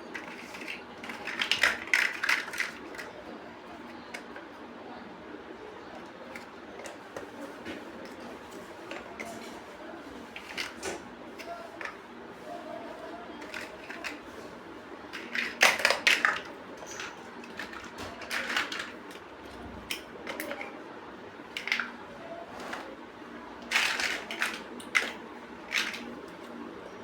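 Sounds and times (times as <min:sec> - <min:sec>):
plastic bricks clicking and rattling: 0:00.1 - 0:04.5, 0:13.4 - 0:14.2, 0:15.1 - 0:19.2, 0:21.5 - 0:22.0, 0:23.6 - 0:26.1.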